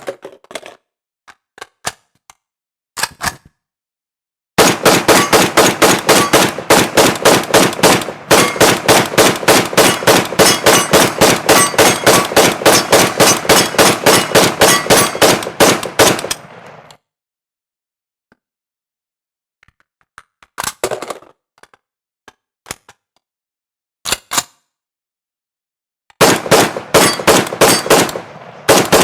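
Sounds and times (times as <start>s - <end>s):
automatic rifle firing: 4.6s - 16.9s, 26.2s - 29.0s.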